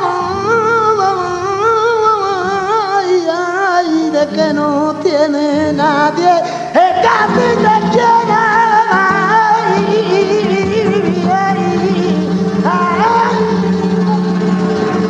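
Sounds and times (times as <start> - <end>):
flamenco guitar: 0.0 - 15.0
man singing flamenco: 0.0 - 15.0.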